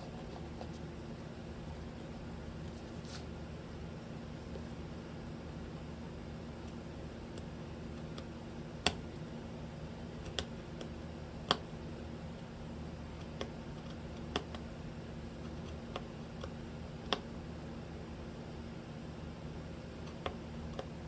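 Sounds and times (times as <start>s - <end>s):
steady low hum: 0.0s - 21.0s
carving tools clicking on wood: 10.2s - 11.7s, 13.2s - 14.7s.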